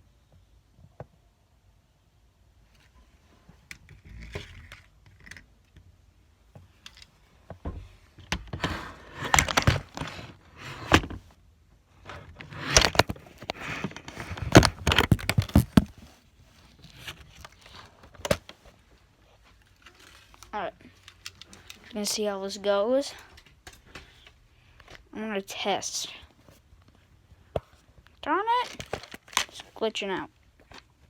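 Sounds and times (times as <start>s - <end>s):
hard objects clattering: 12.3s - 16.0s.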